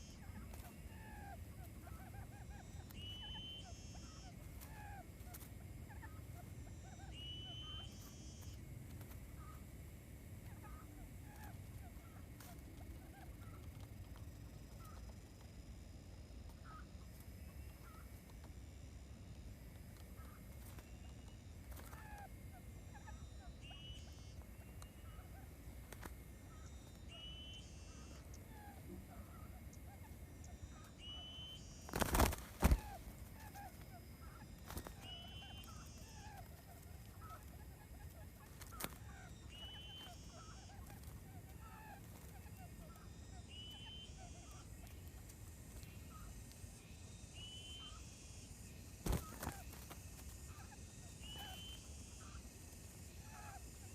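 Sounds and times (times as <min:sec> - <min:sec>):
bird chirps and calls: 0:00.0 - 0:05.1, 0:05.9 - 0:08.6, 0:26.5 - 0:45.2, 0:45.8 - 0:52.5.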